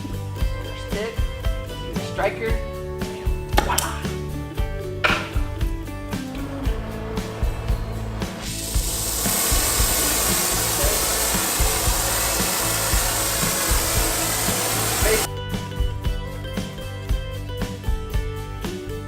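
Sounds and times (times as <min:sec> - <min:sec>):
background music: 0:00.0 - 0:19.0
torch flame hissing: 0:07.4 - 0:15.3.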